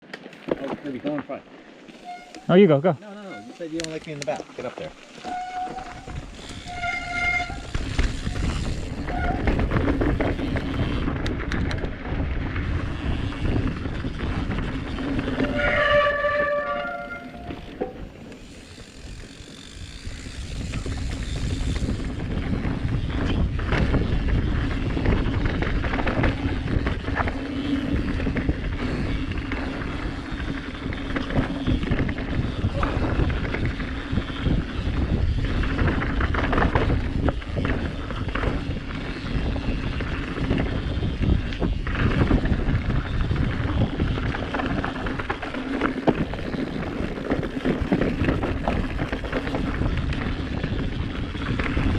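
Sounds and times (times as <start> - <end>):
bike tyre rumble on dirt: 0.0 - 51.9
wind buffeting microphone: 3.4 - 51.9
bike knocks and rattles: 3.9 - 51.9.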